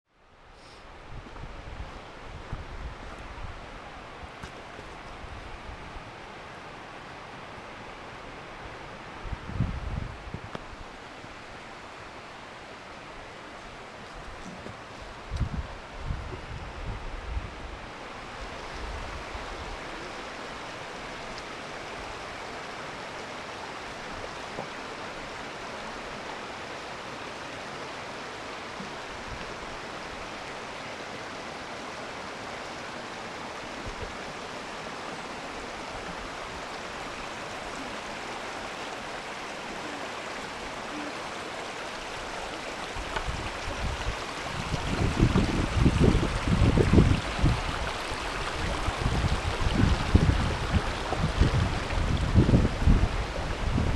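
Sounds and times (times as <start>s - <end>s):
stream rushing over rocks: 0.2s - 53.9s.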